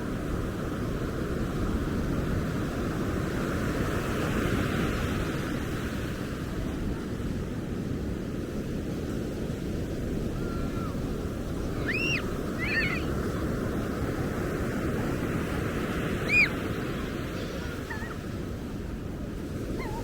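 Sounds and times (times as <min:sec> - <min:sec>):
ocean surf breaking: 0:09.6 - 0:20.0
bird calling: 0:11.6 - 0:13.8, 0:15.8 - 0:18.2, 0:19.7 - 0:20.0.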